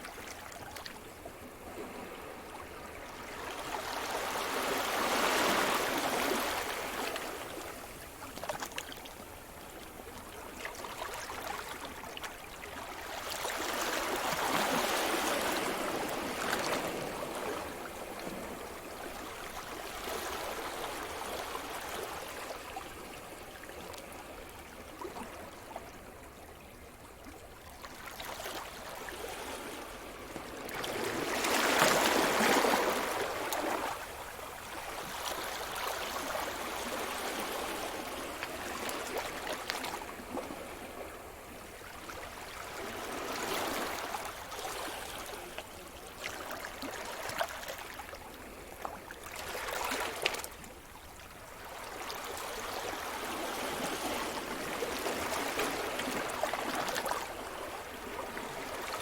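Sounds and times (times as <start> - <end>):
waves breaking on shore: 28.8 - 48.0.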